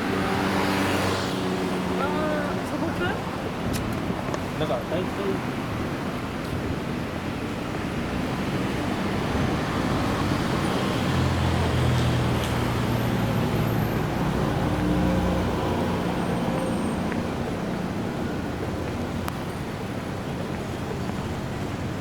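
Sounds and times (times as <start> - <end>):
vehicle passing close by: 0.0 - 3.6, 7.6 - 18.6
road traffic: 0.0 - 22.0.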